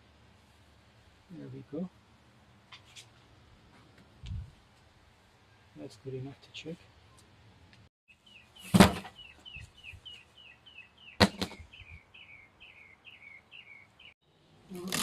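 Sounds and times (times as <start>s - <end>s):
bird chirping: 8.1s - 14.4s
sharp knocks: 11.2s - 11.6s.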